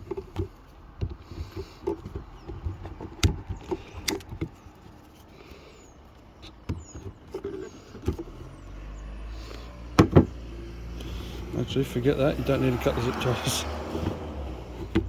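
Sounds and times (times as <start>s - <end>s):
clicks and knocks of handling: 0.0s - 8.4s, 14.0s - 15.0s.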